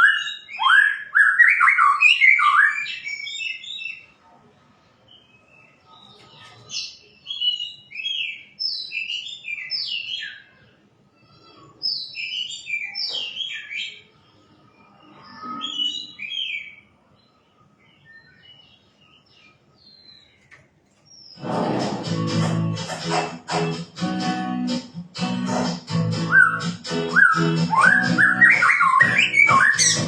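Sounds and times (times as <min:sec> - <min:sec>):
bird singing whistled phrases: 0:00.0 - 0:04.0, 0:17.9 - 0:18.6, 0:26.2 - 0:30.0
acoustic guitar music: 0:21.4 - 0:30.0.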